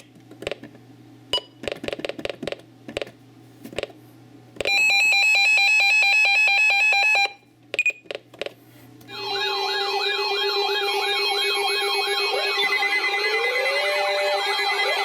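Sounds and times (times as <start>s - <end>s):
alternating electronic alert tone: 9.1s - 15.0s.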